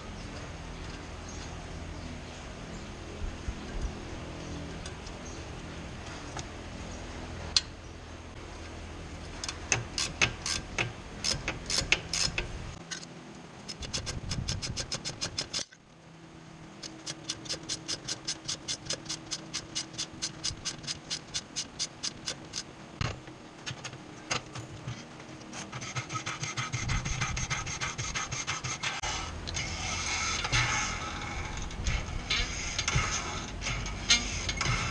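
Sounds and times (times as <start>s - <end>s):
ratchet wrench clicking: 9.4s - 12.5s.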